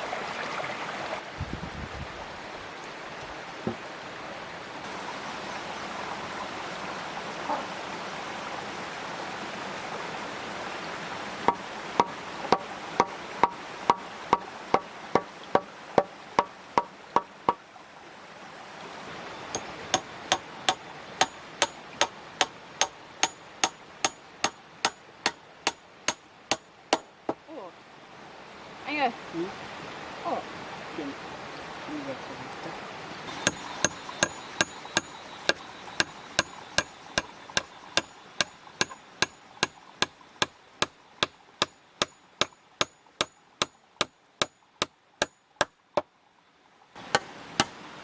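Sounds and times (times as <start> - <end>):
hammer striking with ringing: 19.6 - 27.1, 33.3 - 40.5.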